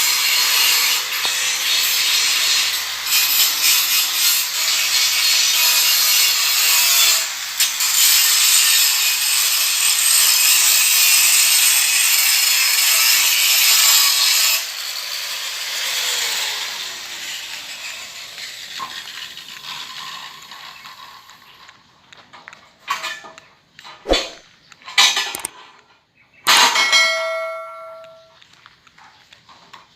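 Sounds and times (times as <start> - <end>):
grinder disc on metal: 0.0 - 21.7.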